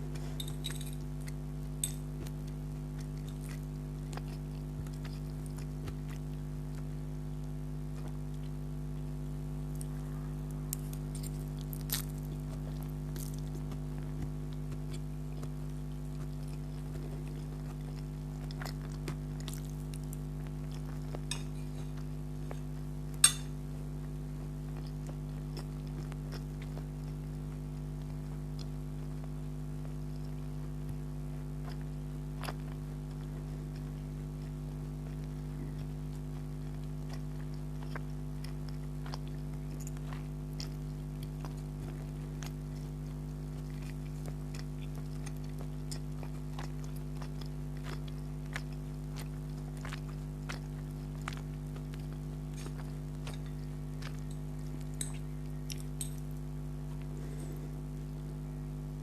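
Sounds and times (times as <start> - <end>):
person chewing spaghetti: 0.0 - 58.8
low electrical hum: 0.0 - 59.0
cutlery clink: 23.2 - 23.5.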